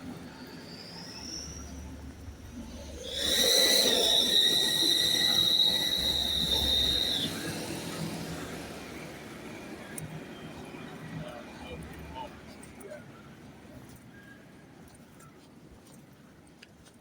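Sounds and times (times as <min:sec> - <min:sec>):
vehicle brakes squealing: 0:00.4 - 0:08.5.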